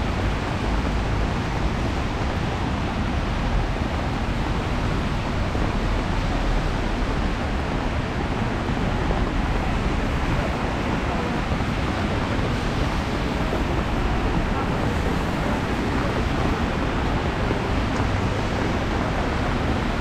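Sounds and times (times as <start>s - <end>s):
city street traffic: 0.0s - 20.0s
tyres hissing on wet asphalt: 8.6s - 20.0s.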